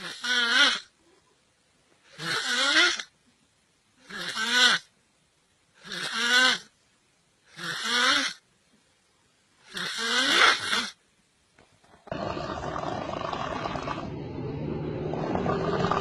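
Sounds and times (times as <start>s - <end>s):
person snoring: 12.1s - 16.0s.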